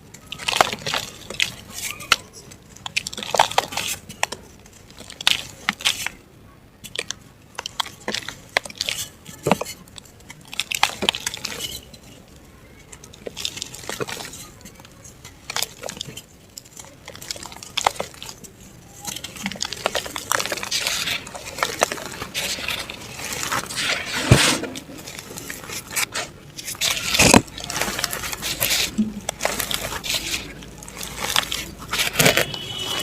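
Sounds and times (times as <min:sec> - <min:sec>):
dry mud crunching by hand: 0:00.2 - 0:02.2, 0:13.0 - 0:33.0
sharp break of dirt: 0:19.0 - 0:33.0.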